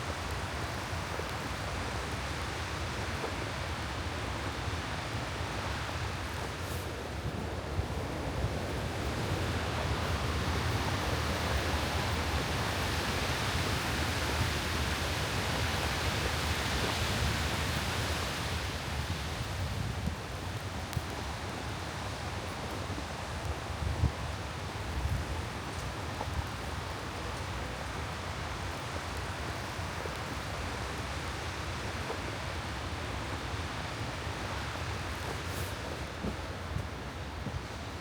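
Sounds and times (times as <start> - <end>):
hiss of blowing snow: 34.0 - 36.8.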